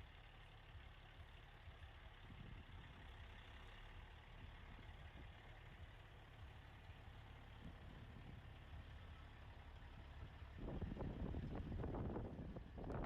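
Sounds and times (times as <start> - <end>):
diesel truck engines idling: 0.0 - 13.0
wind buffeting microphone: 10.6 - 13.0.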